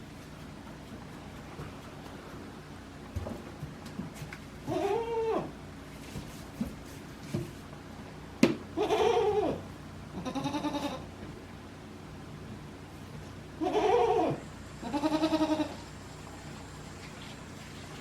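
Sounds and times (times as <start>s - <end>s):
goats bleating: 4.7s - 5.5s, 8.8s - 9.6s, 10.2s - 11.1s, 13.6s - 15.9s.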